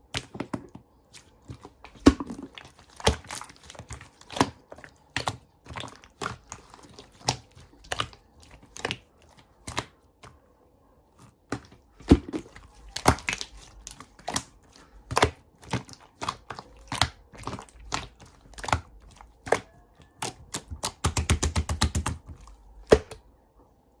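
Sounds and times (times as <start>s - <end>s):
clicks and crackles from handling: 11.2s - 23.2s.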